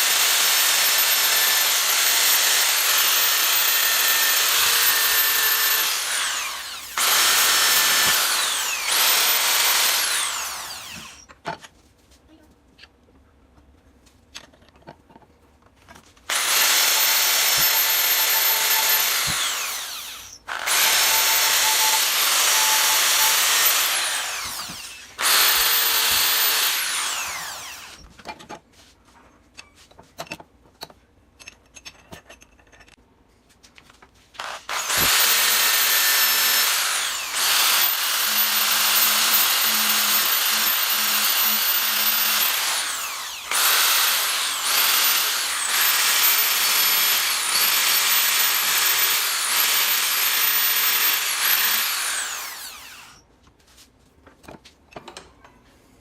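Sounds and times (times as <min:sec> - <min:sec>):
power tool motor whine: 0:00.0 - 0:11.2, 0:16.3 - 0:28.0, 0:34.4 - 0:53.2.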